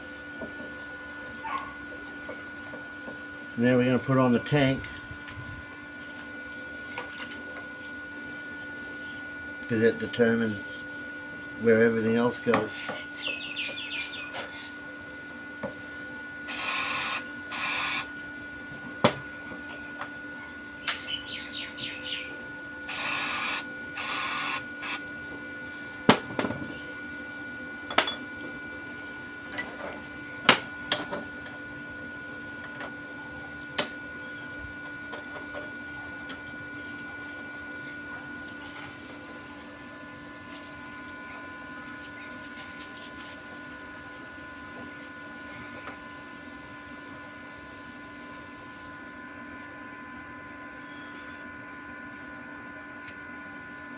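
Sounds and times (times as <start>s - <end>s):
steady electrical hum: 0.0s - 53.9s.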